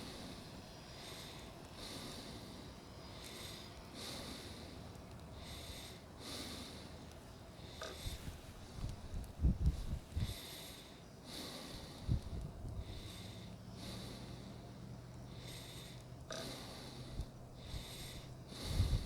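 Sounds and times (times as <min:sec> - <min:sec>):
faint steady hum: 0:00.0 - 0:19.0
wind gusts on microphone: 0:08.0 - 0:10.4, 0:12.0 - 0:13.0, 0:18.6 - 0:19.0.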